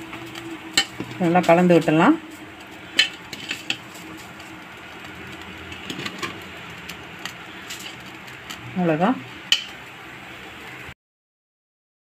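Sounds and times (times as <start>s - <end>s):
steady background hum: 0.0s - 10.9s
spoon scraping a pot: 0.7s - 1.2s, 2.8s - 4.4s, 5.7s - 6.4s, 7.2s - 8.1s.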